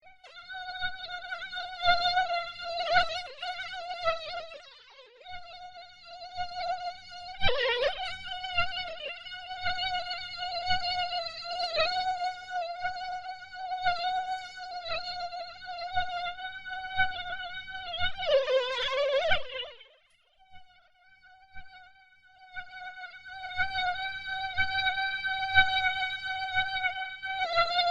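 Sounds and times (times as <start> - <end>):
mosquito whining in flight: 0.3 - 19.8, 20.6 - 27.9.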